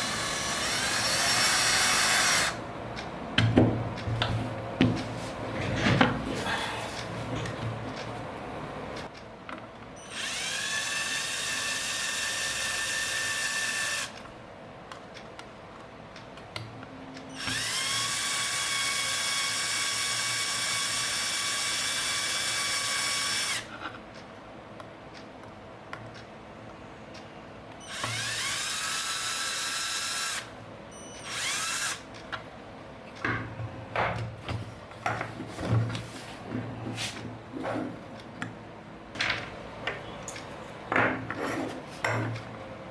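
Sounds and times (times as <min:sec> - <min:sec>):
power drill whining: 0:00.0 - 0:02.6, 0:10.0 - 0:14.2, 0:17.4 - 0:23.7, 0:27.9 - 0:30.5, 0:31.2 - 0:32.0.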